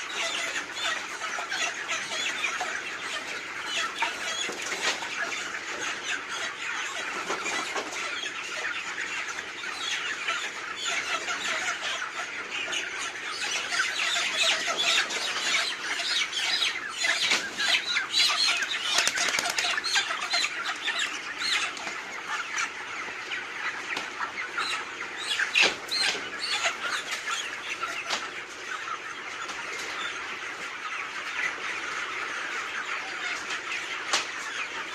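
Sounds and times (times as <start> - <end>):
chickens clucking and squawking: 0.0 - 34.9
wings flapping: 18.9 - 19.8.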